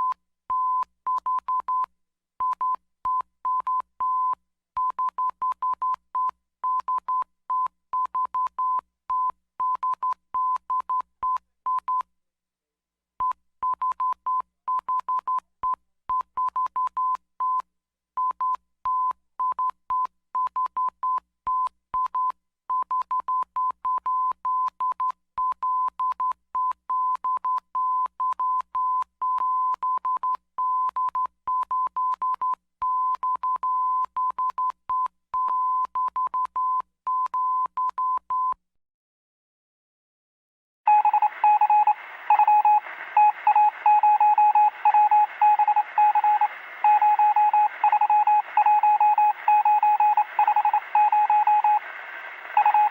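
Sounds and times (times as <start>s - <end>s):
morse code beeps: 40.9s - 52.9s.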